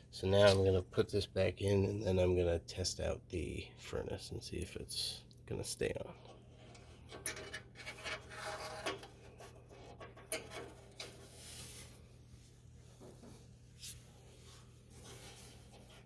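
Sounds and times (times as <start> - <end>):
steady low hum: 0.0 - 16.0
rasping rub: 7.8 - 9.9.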